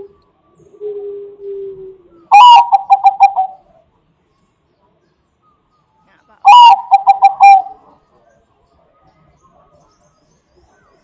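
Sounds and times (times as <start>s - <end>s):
dove cooing: 0.0s - 3.8s, 6.4s - 8.2s
dove quick repeated notes: 2.3s - 3.7s, 6.4s - 7.8s.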